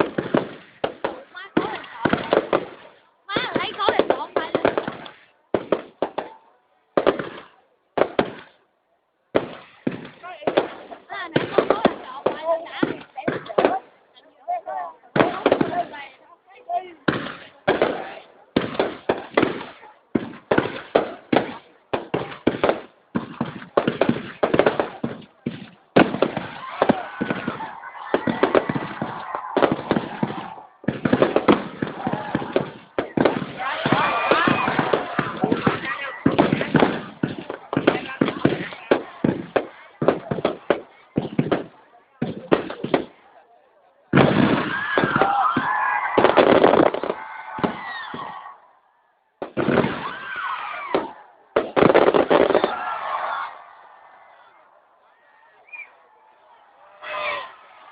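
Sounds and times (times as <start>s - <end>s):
fireworks exploding: 0.0s - 8.7s, 9.3s - 43.4s, 44.1s - 48.7s, 49.4s - 57.9s.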